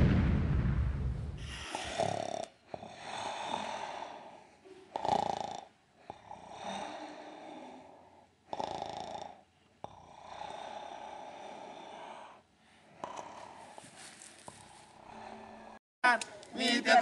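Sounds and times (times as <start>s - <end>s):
deep boom of dramatic music: 0.0s - 1.4s
man snoring: 1.4s - 4.1s, 5.0s - 7.9s, 8.5s - 12.4s.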